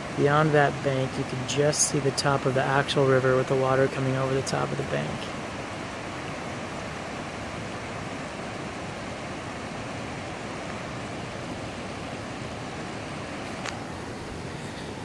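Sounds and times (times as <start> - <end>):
flooding river rushing: 0.0 - 15.0.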